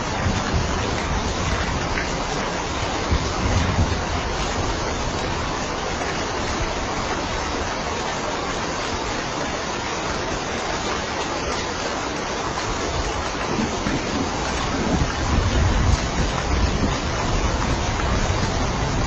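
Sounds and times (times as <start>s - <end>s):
heavy rain hiss: 0.0s - 19.0s.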